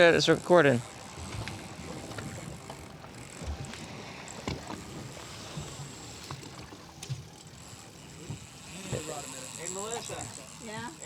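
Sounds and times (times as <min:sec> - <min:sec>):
waves lapping against hull: 0:00.0 - 0:11.0.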